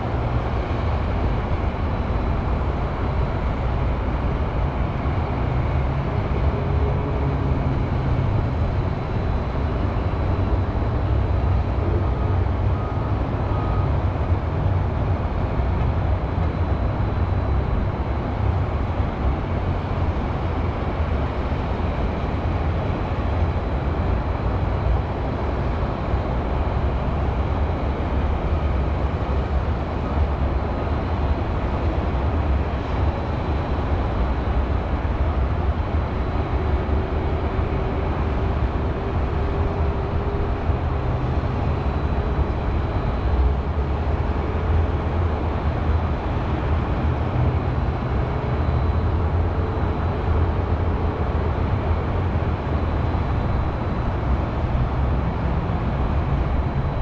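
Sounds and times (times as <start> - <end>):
highway traffic rumble: 0.0 - 57.0.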